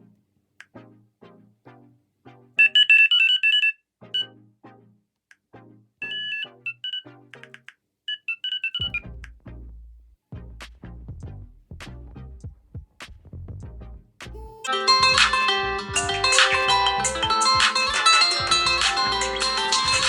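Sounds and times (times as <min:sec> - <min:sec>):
high electronic beeping: 0:06.0 - 0:07.0
plucked ringtone melody: 0:06.0 - 0:07.0, 0:14.5 - 0:20.0
deep bass-heavy sound: 0:08.8 - 0:20.0.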